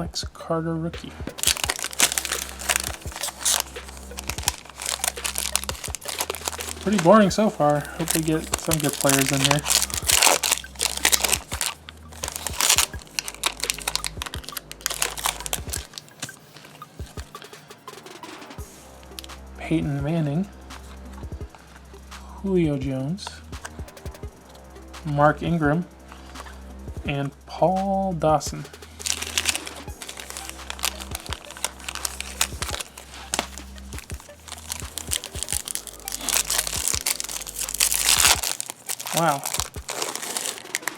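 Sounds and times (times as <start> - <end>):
foil wrapper crinkling and tearing: 1.3 - 17.2, 28.6 - 40.9.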